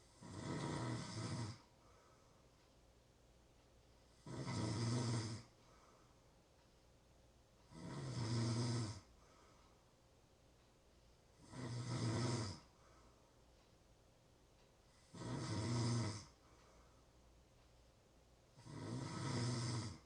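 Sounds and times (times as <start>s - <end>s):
person snoring: 0.0s - 1.7s, 4.2s - 5.5s, 7.7s - 9.1s, 11.4s - 12.7s, 15.0s - 16.4s, 18.6s - 20.0s
quiet breathing: 0.0s - 20.0s.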